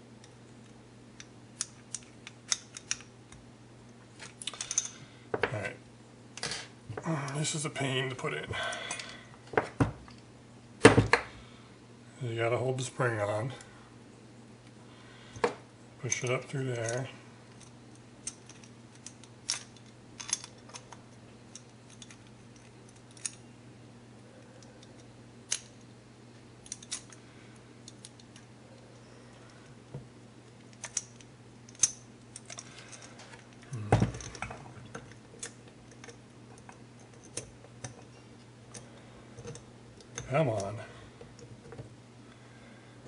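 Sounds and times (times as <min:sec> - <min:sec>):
small metal parts clicking: 0:01.2 - 0:03.1, 0:04.2 - 0:05.0, 0:16.8 - 0:23.4, 0:24.8 - 0:25.9, 0:26.6 - 0:27.2, 0:30.5 - 0:33.6, 0:34.2 - 0:40.8
low hum: 0:31.2 - 0:43.0.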